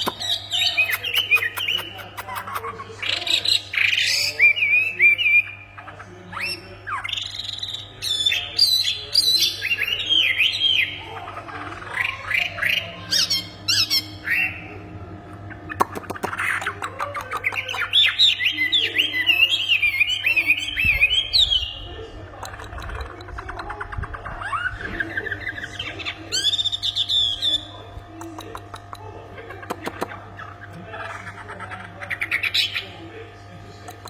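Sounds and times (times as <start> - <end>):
bird rapid clicking: 0.0 - 2.8, 15.7 - 18.2, 22.4 - 24.6, 28.1 - 31.3.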